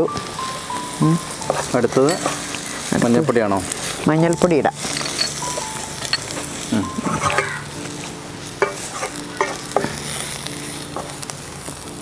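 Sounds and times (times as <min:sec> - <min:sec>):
onions sizzling in oil: 0:00.0 - 0:12.0
spoon knocking against pan: 0:08.6 - 0:08.8.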